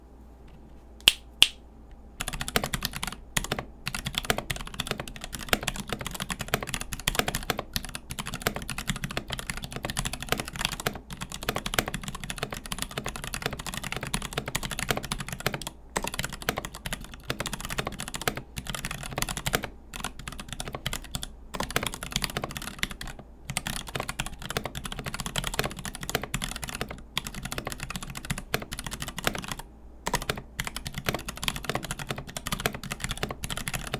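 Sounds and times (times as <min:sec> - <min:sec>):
fast mechanical keyboard typing: 0:02.2 - 0:33.9.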